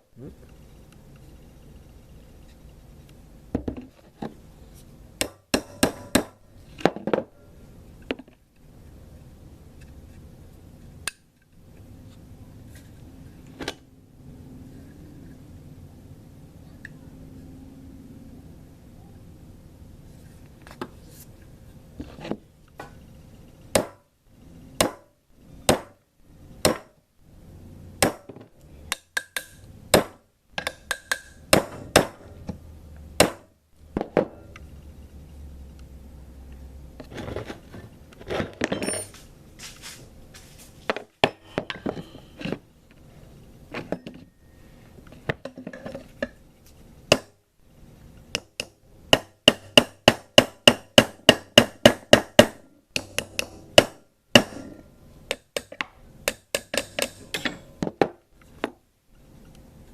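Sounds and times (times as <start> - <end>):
hammer tapping on steel: 5.2 - 6.4, 48.4 - 54.7, 55.3 - 57.4
metallic clinks: 38.7 - 39.2.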